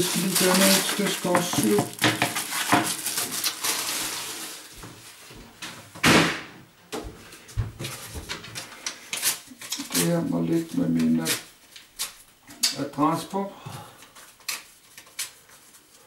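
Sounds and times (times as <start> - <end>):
household objects clicking and knocking: 0.0 - 3.0.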